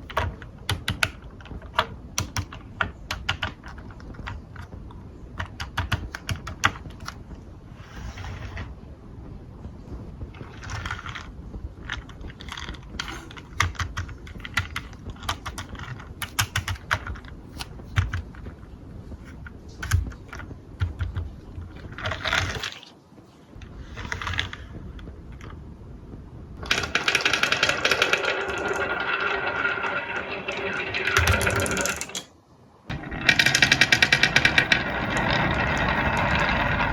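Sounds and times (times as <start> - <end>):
marbles rolling on wooden track: 26.6 - 32.3, 32.9 - 36.9
mechanical buzzing rattle: 26.6 - 32.3, 32.9 - 36.9.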